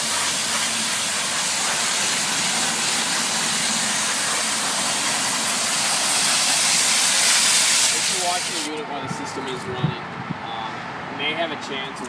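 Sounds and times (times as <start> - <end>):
hose sprayer spraying water: 0.0 - 8.8.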